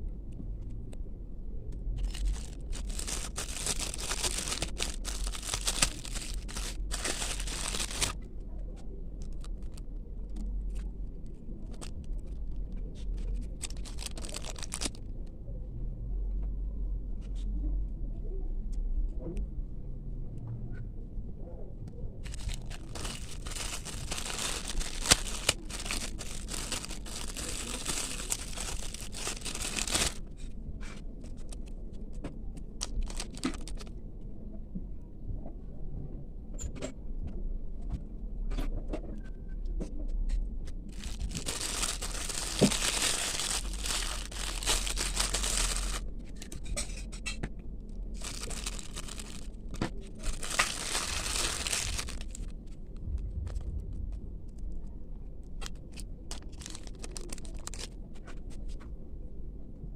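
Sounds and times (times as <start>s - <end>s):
packaging crinkling and tearing: 2.0s - 8.3s, 9.2s - 10.4s, 11.6s - 15.0s, 22.2s - 30.4s, 31.2s - 31.7s, 32.6s - 33.9s, 40.9s - 46.8s, 48.0s - 52.8s, 55.5s - 58.4s.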